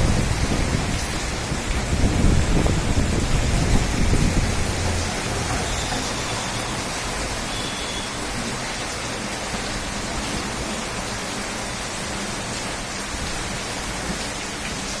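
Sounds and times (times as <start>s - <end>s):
rain pouring: 0.0s - 15.0s.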